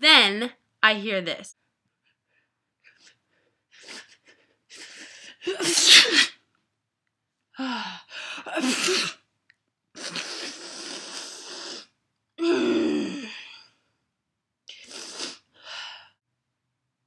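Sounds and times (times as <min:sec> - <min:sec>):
person sneezing: 0:04.8 - 0:06.4, 0:08.4 - 0:09.2.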